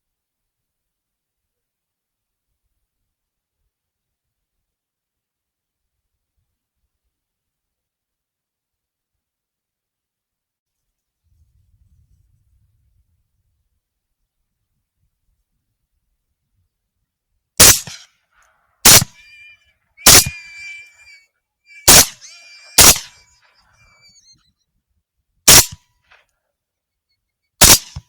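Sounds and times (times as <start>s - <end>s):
suppressed rifle shots: 17.6s - 18.0s, 18.9s - 21.1s, 21.8s - 23.2s, 25.5s - 25.8s, 27.6s - 28.0s.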